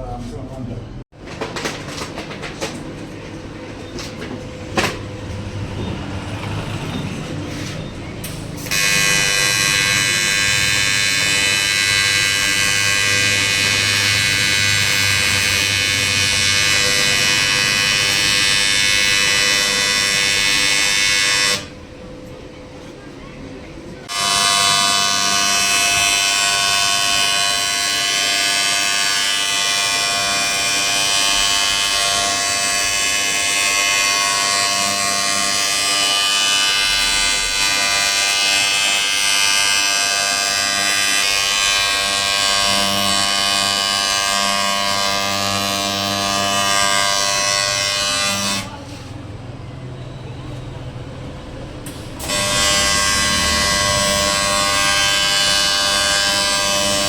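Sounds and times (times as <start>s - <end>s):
welding arc buzzing: 8.3s - 21.8s, 24.0s - 48.8s, 52.2s - 57.0s.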